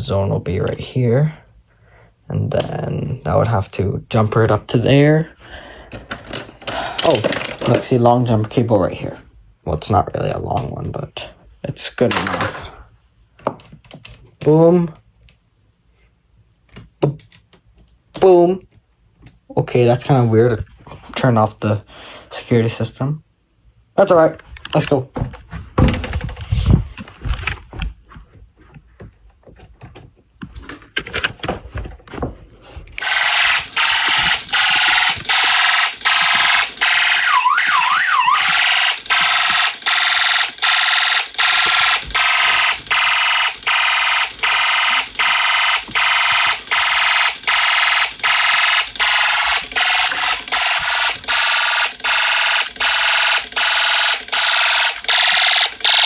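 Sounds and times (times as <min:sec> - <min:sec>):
harsh buzzing alarm: 0:33.0 - 0:56.0
warbling tone: 0:33.8 - 0:39.4.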